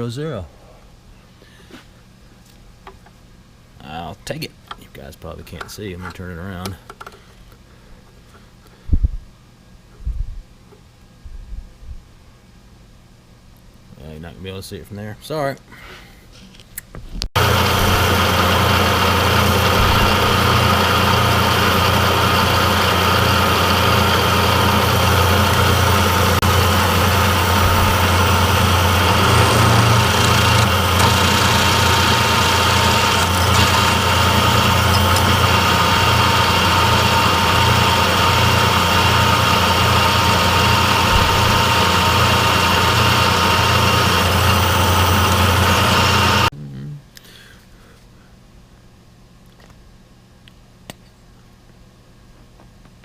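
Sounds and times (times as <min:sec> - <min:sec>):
machine tool humming with gear whine: 0:17.4 - 0:46.5.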